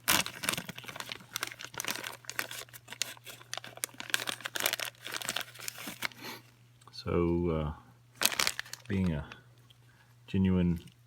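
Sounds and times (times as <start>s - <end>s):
packaging crinkling: 0.0s - 6.2s, 8.2s - 9.4s.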